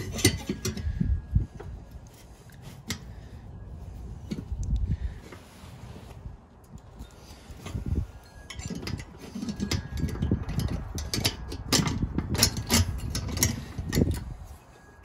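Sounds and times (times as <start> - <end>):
metal lid clinking and knocking: 0.0 - 0.8.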